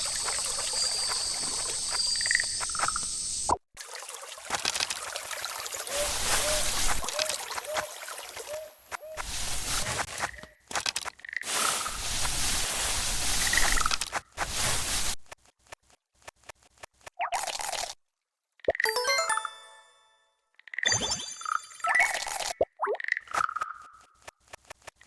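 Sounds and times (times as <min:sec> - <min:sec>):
water trickling and sloshing: 0:00.0 - 0:03.1, 0:03.7 - 0:09.1
short chirping calls: 0:05.9 - 0:09.3.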